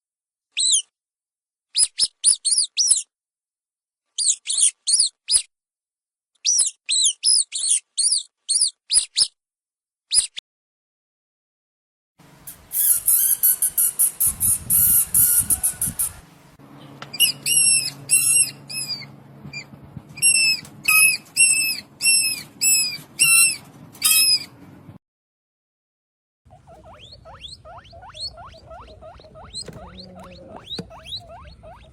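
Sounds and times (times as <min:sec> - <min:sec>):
mouse squeaking: 0:00.6 - 0:00.8, 0:01.8 - 0:03.1, 0:04.2 - 0:05.5, 0:06.4 - 0:09.4, 0:12.7 - 0:16.2, 0:17.1 - 0:24.5, 0:26.5 - 0:31.9.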